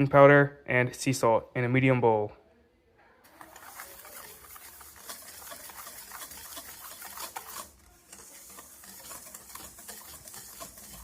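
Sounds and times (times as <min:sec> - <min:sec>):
wire whisk scraping a bowl: 0:03.3 - 0:11.0.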